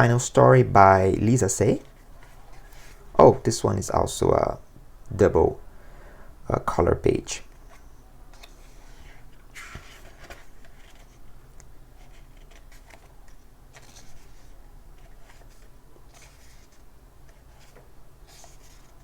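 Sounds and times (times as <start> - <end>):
book pages rustling: 1.2 - 3.5, 7.4 - 19.0.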